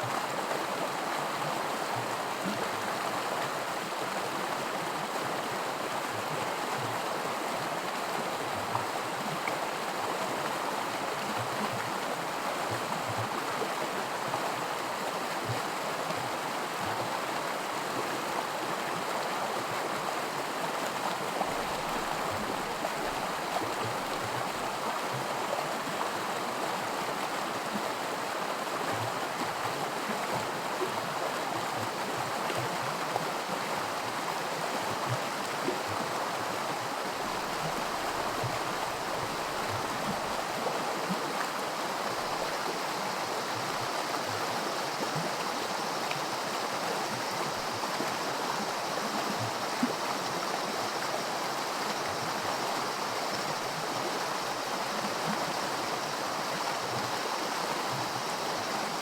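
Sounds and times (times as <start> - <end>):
creek rushing over rocks: 0.0 - 59.0.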